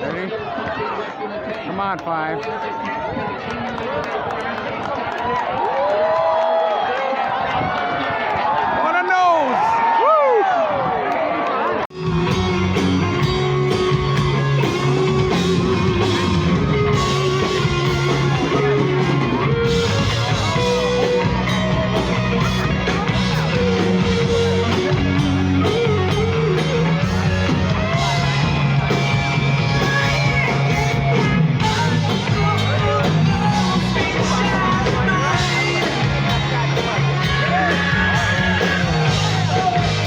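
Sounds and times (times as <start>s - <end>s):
rock guitar: 11.9s - 40.0s
person singing: 29.7s - 40.0s.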